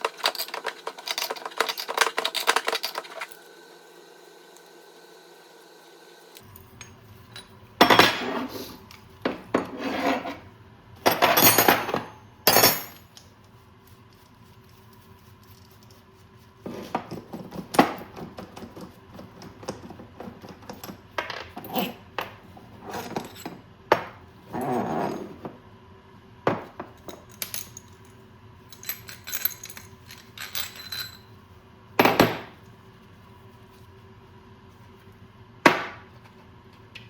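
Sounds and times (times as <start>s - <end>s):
metal tools clinking on workbench: 0.0s - 3.4s, 11.1s - 13.2s, 20.5s - 25.4s, 28.8s - 31.3s.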